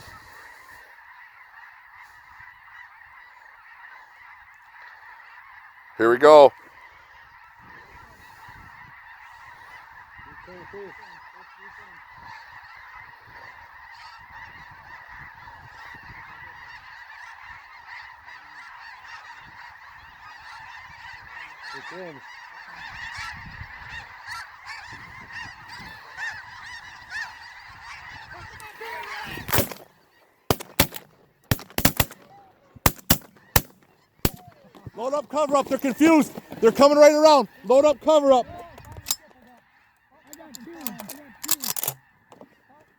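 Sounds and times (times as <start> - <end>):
geese honking: 0.0 - 42.9
sharp cracks: 29.5 - 29.9, 30.5 - 32.3, 32.9 - 37.0, 40.4 - 42.0.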